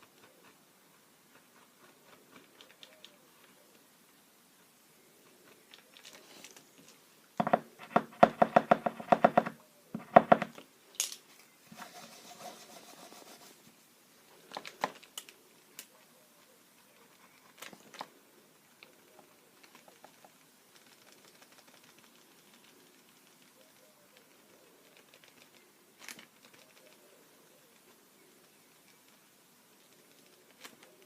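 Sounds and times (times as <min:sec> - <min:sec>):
clicks and taps: 0:07.4 - 0:10.6.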